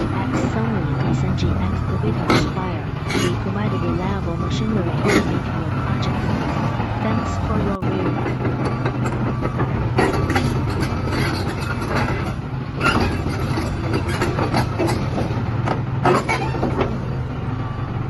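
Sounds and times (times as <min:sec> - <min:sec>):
diesel excavator engine running: 0:00.0 - 0:18.0
machine clanks and knocks: 0:07.8 - 0:17.0.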